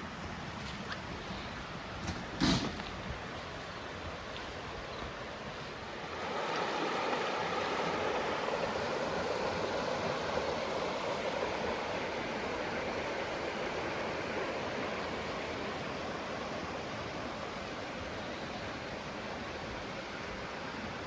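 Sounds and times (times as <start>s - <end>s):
stream water rushing: 0.0s - 21.0s.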